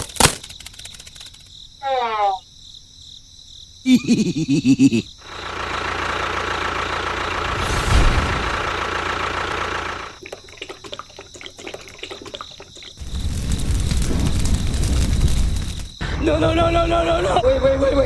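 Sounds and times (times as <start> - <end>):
rapid rattle of clicks: 0.0 - 1.6
low rumble: 7.2 - 9.7.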